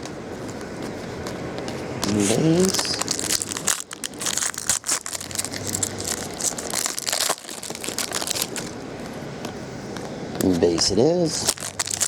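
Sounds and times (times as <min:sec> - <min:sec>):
foil wrapper crinkling: 0:02.0 - 0:08.8, 0:10.7 - 0:12.0.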